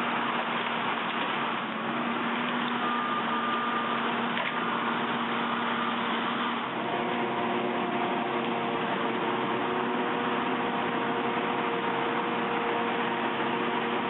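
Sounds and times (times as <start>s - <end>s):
skid steer brush cutter running: 1.0s - 14.0s.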